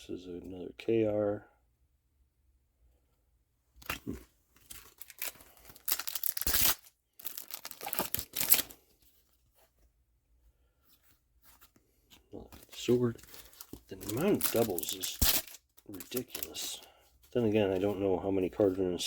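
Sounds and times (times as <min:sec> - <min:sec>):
wrapper tearing and crinkling: 0:03.8 - 0:08.8, 0:12.6 - 0:16.7.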